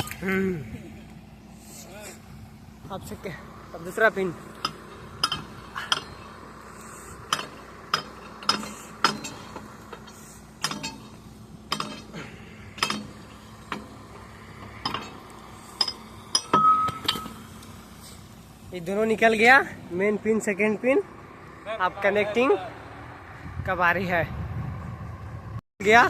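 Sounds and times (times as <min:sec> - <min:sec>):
sledgehammer striking steel pin: 0:15.8 - 0:17.5.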